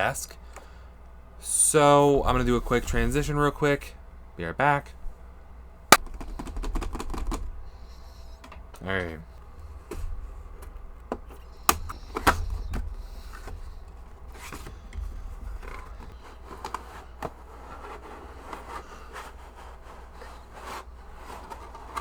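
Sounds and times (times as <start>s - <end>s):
sharp knocks: 5.9s - 7.9s
cardboard box scraping and rustling: 11.4s - 22.0s.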